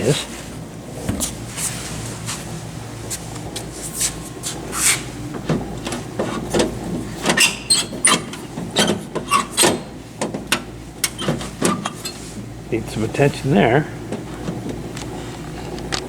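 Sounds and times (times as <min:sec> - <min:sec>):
scraping and rubbing of parts: 0:03.1 - 0:12.5.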